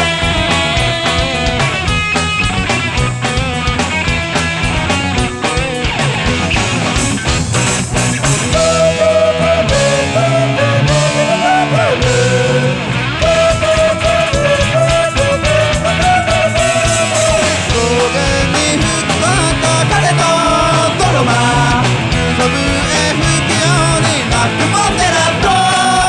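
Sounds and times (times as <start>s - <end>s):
person singing: 0.0s - 1.6s, 8.6s - 26.0s
rock band music: 0.0s - 26.0s.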